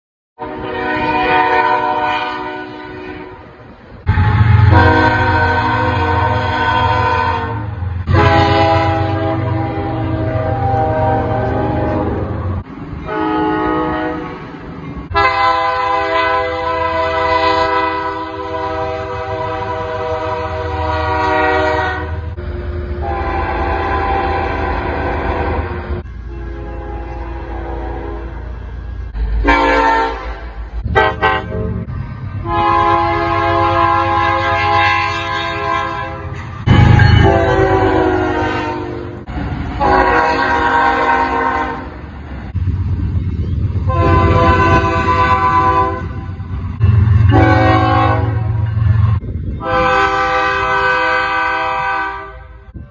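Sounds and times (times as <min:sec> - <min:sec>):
locomotive air horn blasts: 0:00.4 - 0:42.0, 0:43.8 - 0:52.9
low rumble of train: 0:00.4 - 0:52.9.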